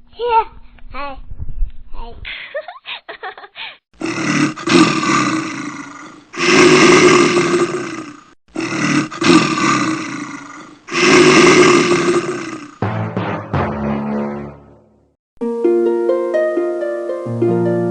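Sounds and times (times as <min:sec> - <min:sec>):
big cat roaring: 0:04.0 - 0:12.8.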